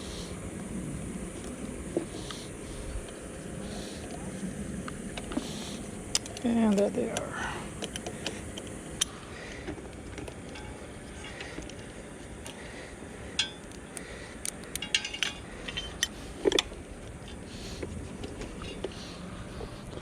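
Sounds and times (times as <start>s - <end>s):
metal tools clinking: 10.4s - 11.8s, 14.7s - 16.7s.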